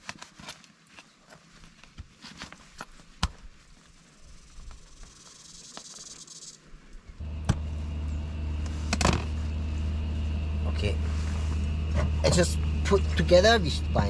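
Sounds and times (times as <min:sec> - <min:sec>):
insect buzzing: 0:04.3 - 0:06.7
steady low hum: 0:06.7 - 0:14.0.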